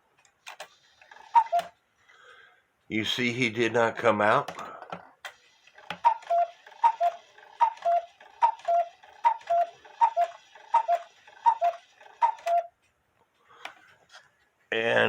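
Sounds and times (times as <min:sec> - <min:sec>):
clock mechanism clicks: 0:00.2 - 0:01.7, 0:04.5 - 0:12.7
cuckoo clock calls: 0:01.0 - 0:01.8, 0:05.7 - 0:12.8.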